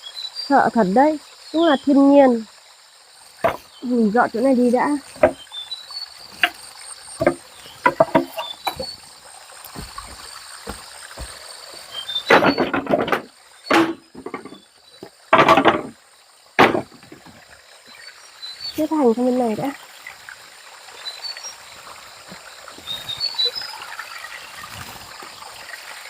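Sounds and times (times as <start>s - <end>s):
light knocks and clicks: 7.2s - 9.0s.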